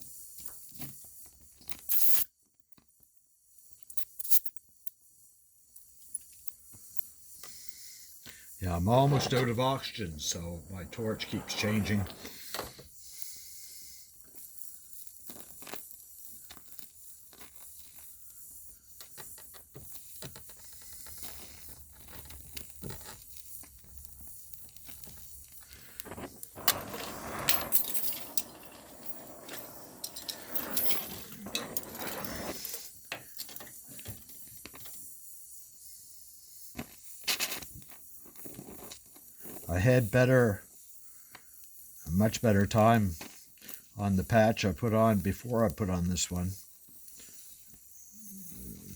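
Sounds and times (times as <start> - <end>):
torch flame hissing: 7.2 - 48.9
crackles and clicks: 8.3 - 13.4, 14.2 - 35.2.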